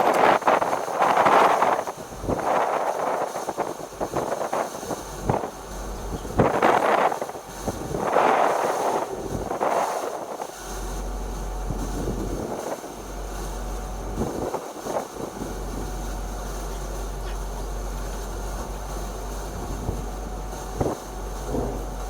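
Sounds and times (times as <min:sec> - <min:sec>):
wind buffeting microphone: 0:00.0 - 0:22.0
low rumble: 0:19.5 - 0:22.0.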